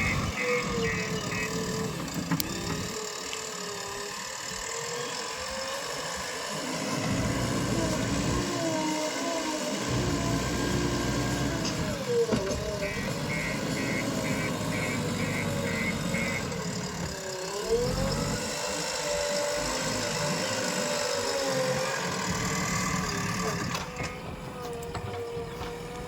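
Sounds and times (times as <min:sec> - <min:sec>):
warning beeper: 0:00.0 - 0:01.6, 0:12.8 - 0:16.5
diesel engine running: 0:00.0 - 0:26.0.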